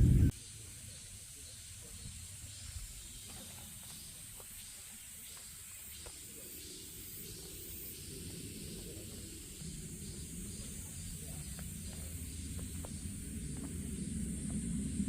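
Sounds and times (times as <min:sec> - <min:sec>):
low rumble: 0:00.0 - 0:00.3, 0:08.6 - 0:15.0
steady high hiss: 0:00.0 - 0:15.0.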